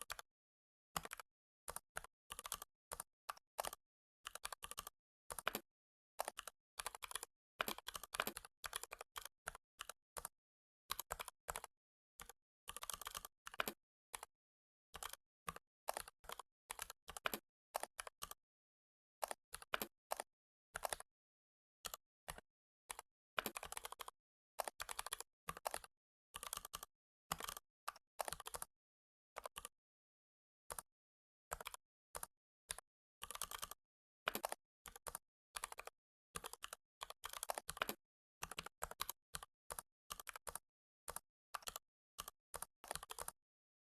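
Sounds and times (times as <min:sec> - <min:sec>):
computer keyboard typing: 0:12.7 - 0:13.7, 0:24.8 - 0:25.8, 0:28.2 - 0:28.6, 0:36.4 - 0:38.0, 0:42.8 - 0:43.4.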